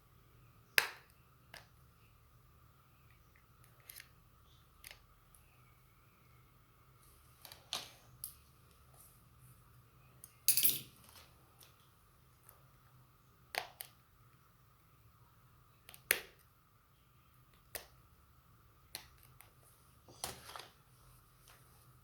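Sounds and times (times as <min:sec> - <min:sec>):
faint high hum: 0:00.0 - 0:15.9.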